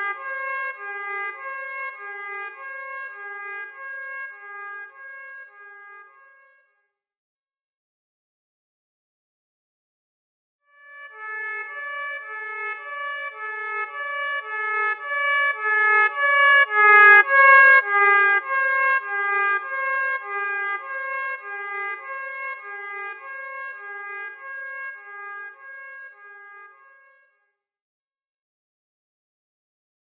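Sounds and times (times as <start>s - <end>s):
pulsing alarm horn tone: 10.7s - 27.1s.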